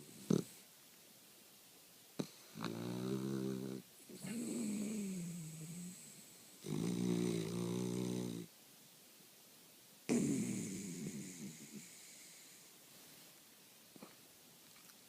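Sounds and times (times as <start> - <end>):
dog snoring: 0.0 - 0.6, 2.2 - 8.5, 10.1 - 12.6.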